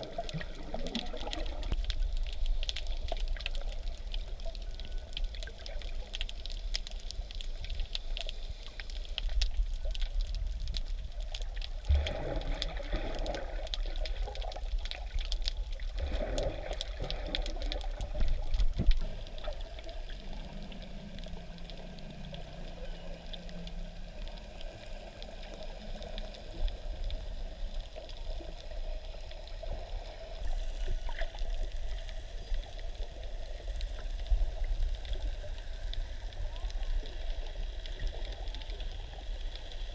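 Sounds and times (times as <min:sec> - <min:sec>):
muffled water sloshing and gurgling: 0:00.0 - 0:39.9
faint scattered clicks: 0:00.1 - 0:39.9.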